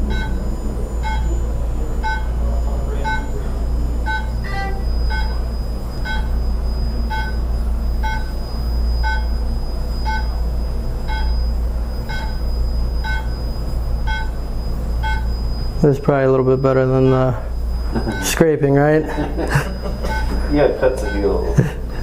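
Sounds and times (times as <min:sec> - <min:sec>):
short electronic beep: 0:00.0 - 0:01.4, 0:02.0 - 0:03.4, 0:04.0 - 0:06.4, 0:07.0 - 0:07.4, 0:08.0 - 0:09.4, 0:10.0 - 0:10.4, 0:11.1 - 0:13.4, 0:14.1 - 0:14.3, 0:15.0 - 0:21.5
device humming: 0:00.0 - 0:22.0.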